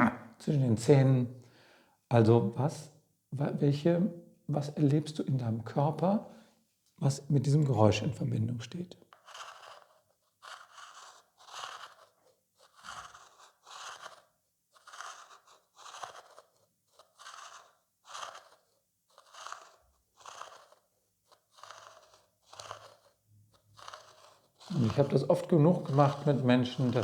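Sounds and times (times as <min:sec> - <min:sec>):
spoon scraping a vase: 0:09.2 - 0:27.0.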